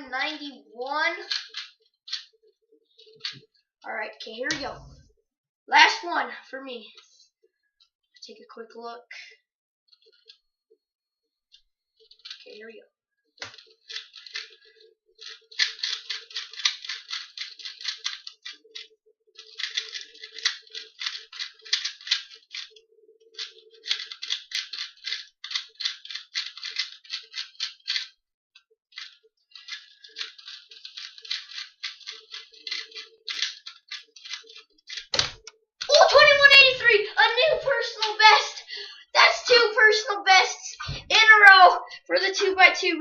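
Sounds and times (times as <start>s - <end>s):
puzzle cube clicking and rattling: 1.2s - 2.3s, 12.1s - 12.6s, 13.4s - 28.2s, 28.9s - 38.5s.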